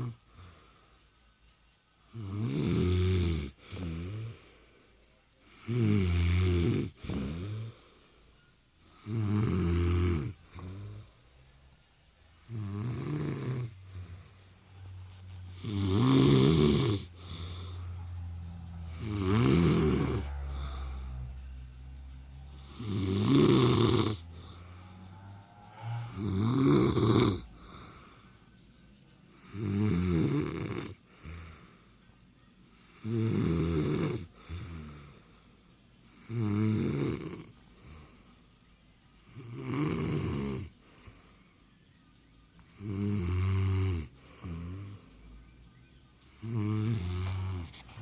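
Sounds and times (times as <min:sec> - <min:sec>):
soft breath: 0:00.0 - 0:01.3, 0:03.6 - 0:05.7, 0:07.0 - 0:09.1, 0:13.7 - 0:15.6, 0:17.0 - 0:21.8, 0:24.2 - 0:25.4, 0:27.4 - 0:29.5, 0:31.0 - 0:32.9, 0:37.5 - 0:38.6, 0:40.7 - 0:41.8
woman snoring: 0:02.1 - 0:04.4, 0:05.6 - 0:07.8, 0:08.9 - 0:11.2, 0:12.4 - 0:14.5, 0:15.4 - 0:21.4, 0:22.4 - 0:28.2, 0:29.3 - 0:31.6, 0:32.8 - 0:35.2, 0:36.2 - 0:38.1, 0:39.3 - 0:40.7, 0:42.7 - 0:45.1, 0:46.4 - 0:47.7.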